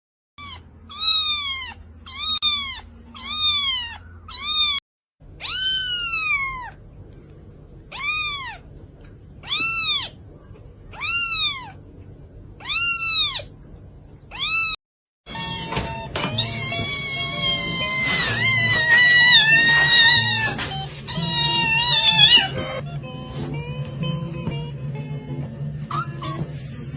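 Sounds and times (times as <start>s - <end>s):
cat meowing: 0.4s - 4.8s, 5.4s - 6.8s, 7.9s - 8.7s, 9.4s - 10.2s, 10.9s - 11.8s, 12.6s - 13.5s, 14.3s - 22.8s
music: 15.3s - 26.9s.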